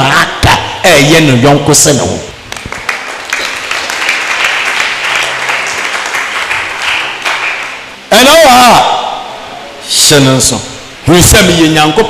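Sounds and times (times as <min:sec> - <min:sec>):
crowd clapping: 0:02.5 - 0:08.0.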